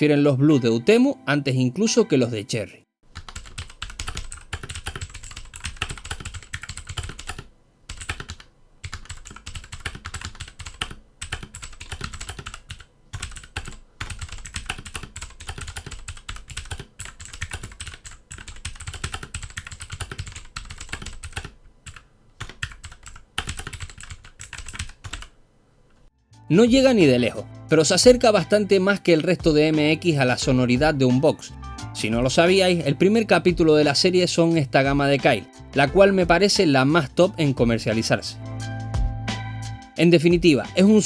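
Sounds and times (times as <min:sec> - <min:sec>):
mechanical keyboard typing: 0:03.1 - 0:25.4.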